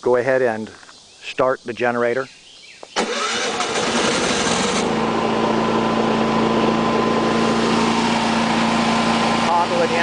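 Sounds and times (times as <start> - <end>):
electric starter cranking: 3.0 - 10.0
generator engine running: 3.0 - 10.0.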